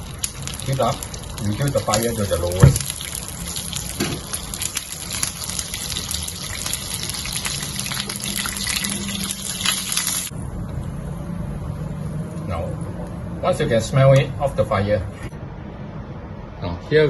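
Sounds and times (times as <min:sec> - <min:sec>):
peppercorns sizzling in oil: 0:00.0 - 0:10.3.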